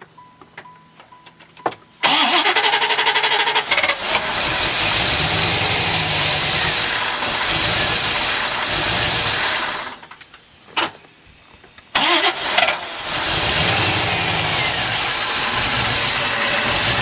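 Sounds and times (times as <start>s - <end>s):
engine starter cranking: 2.0s - 10.1s, 12.0s - 17.0s
car engine idling: 2.0s - 10.2s, 12.0s - 17.0s.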